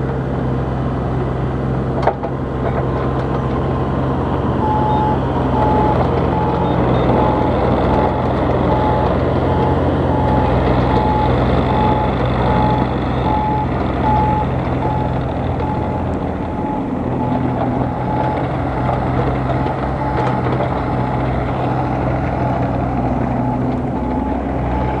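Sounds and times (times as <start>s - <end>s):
excavator diesel engine hum: 0.0s - 25.0s
travel alarm beeping: 4.6s - 18.5s.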